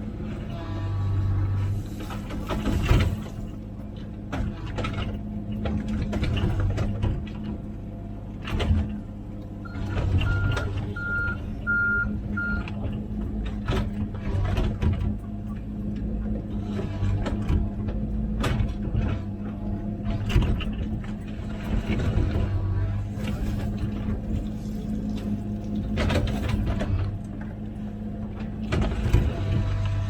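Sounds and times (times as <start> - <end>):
excavator diesel engine running: 0.0 - 30.0
backup alarm beeps: 9.7 - 12.6.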